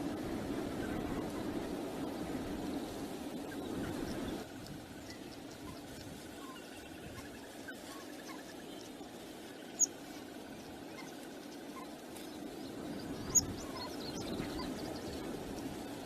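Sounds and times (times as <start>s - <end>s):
wind rumble on microphone: 0.0s - 16.0s
high-pitched bird chirps: 13.2s - 14.8s.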